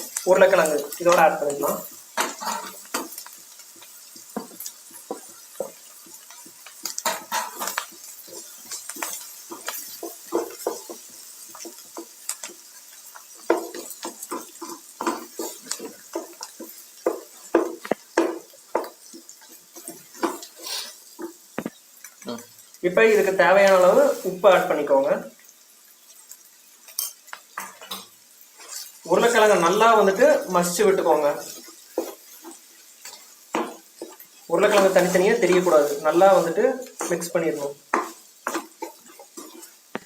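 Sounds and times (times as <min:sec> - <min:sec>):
spoon scraping and knocking pan: 0:00.0 - 0:24.8, 0:26.8 - 0:40.0
faint sizzle: 0:00.0 - 0:40.0.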